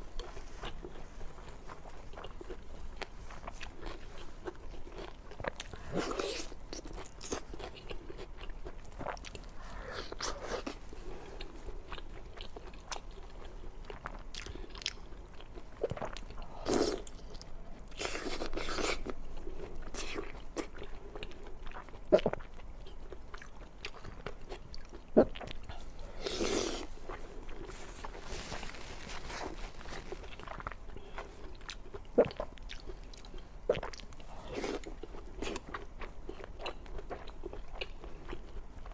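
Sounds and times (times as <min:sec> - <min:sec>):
person biting and chewing food: 0:00.2 - 0:10.8, 0:23.3 - 0:38.6.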